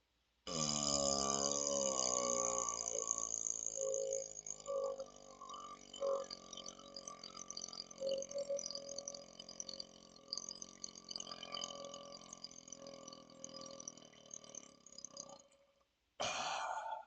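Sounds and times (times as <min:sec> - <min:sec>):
man burping: 0:00.5 - 0:01.4, 0:16.2 - 0:17.0.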